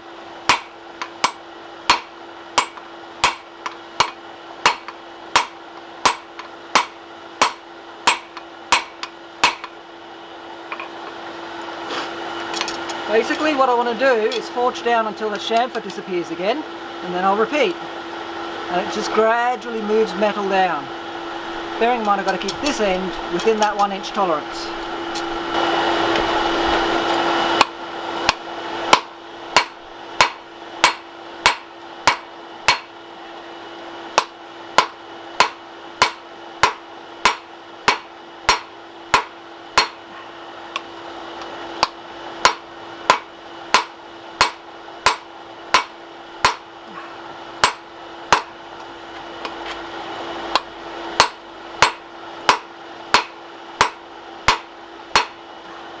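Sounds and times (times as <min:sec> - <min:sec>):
hammer striking steel on anvil: 0:00.5 - 0:09.8, 0:28.3 - 0:32.9, 0:34.2 - 0:40.1, 0:41.8 - 0:46.7, 0:47.6 - 0:48.6, 0:50.5 - 0:55.4.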